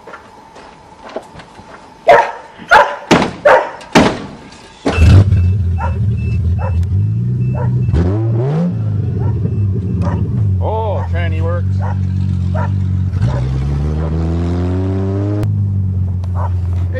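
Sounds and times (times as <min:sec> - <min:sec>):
dog barking: 0:02.1 - 0:03.8, 0:05.8 - 0:06.8, 0:07.5 - 0:07.9, 0:09.2 - 0:09.4, 0:10.0 - 0:10.3, 0:11.0 - 0:11.2, 0:11.8 - 0:13.5, 0:16.3 - 0:16.6
car engine starting and running: 0:04.8 - 0:16.9
pulsing warning chime: 0:05.0 - 0:10.3.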